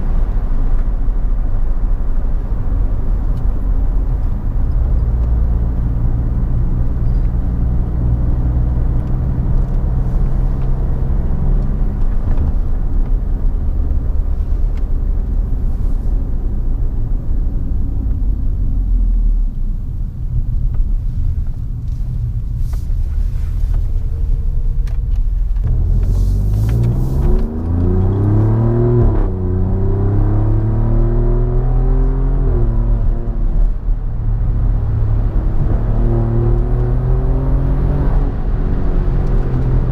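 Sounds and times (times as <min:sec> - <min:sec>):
car engine heard from cabin: 0:00.0 - 0:39.9
gear upshifts: 0:21.2 - 0:30.5.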